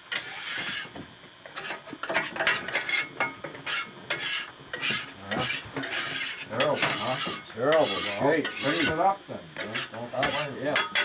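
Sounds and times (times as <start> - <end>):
rasping scraping strokes: 4.9 - 9.0.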